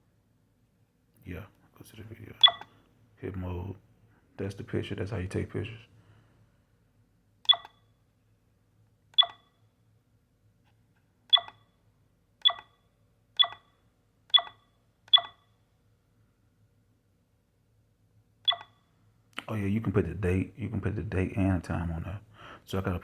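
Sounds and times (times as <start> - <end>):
camera button beeps: 2.4 - 2.7, 7.4 - 7.9, 9.2 - 9.6, 11.3 - 11.7, 12.4 - 12.8, 13.4 - 13.7, 14.3 - 15.4, 18.4 - 18.9.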